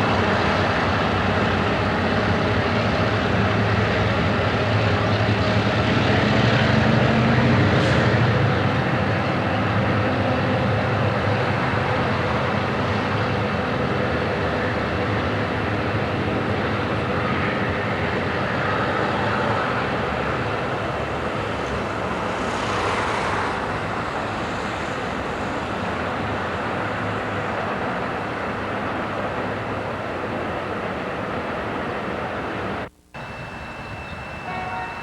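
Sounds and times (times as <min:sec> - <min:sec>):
diesel train rumbling past: 0:00.0 - 0:35.0.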